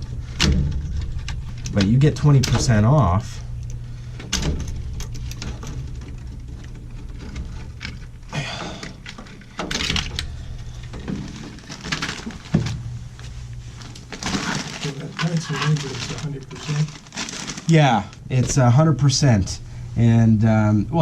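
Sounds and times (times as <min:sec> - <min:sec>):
clicks and knocks of handling parts: 0:00.0 - 0:12.8
steady low hum: 0:00.0 - 0:21.0.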